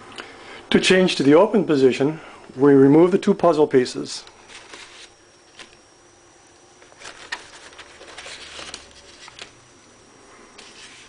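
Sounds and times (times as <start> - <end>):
paper scraping: 4.4 - 5.7, 7.0 - 9.5, 10.6 - 11.0.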